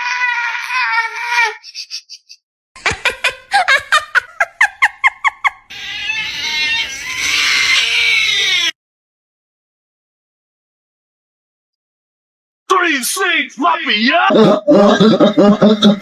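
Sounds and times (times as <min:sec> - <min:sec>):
short squeaky animal calls: 0:05.7 - 0:08.7
harsh raspy animal cry: 0:05.7 - 0:08.8.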